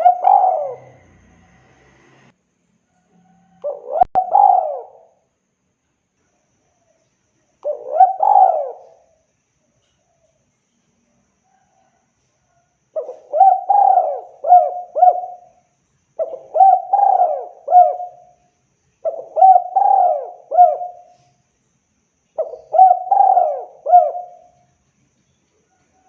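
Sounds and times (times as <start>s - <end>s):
dove cooing: 0.0s - 1.5s, 3.5s - 5.2s, 7.6s - 9.2s, 13.0s - 15.6s, 16.2s - 18.4s, 19.0s - 21.3s, 22.4s - 24.6s.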